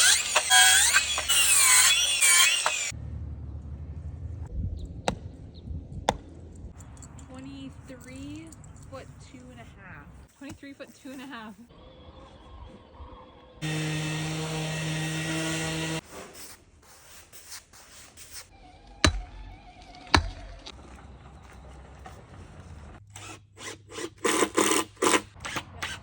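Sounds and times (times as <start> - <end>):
power tool running: 0.0 - 2.9, 13.6 - 16.0
sharp knocks: 5.1 - 5.3, 19.0 - 19.4.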